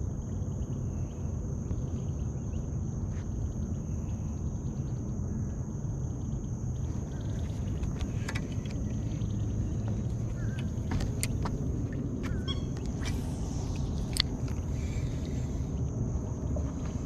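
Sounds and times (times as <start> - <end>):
high insect drone: 0.0 - 17.0
low rumble: 0.0 - 17.0
bird chirps: 12.2 - 13.0.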